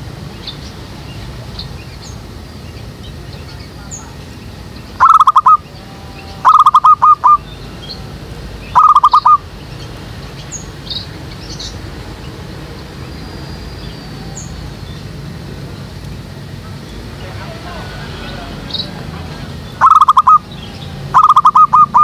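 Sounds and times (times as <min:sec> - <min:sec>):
faint high bird chirps: 0:03.3 - 0:11.8, 0:19.8 - 0:22.0
dove cooing: 0:05.0 - 0:07.4, 0:08.8 - 0:09.4, 0:19.8 - 0:22.0.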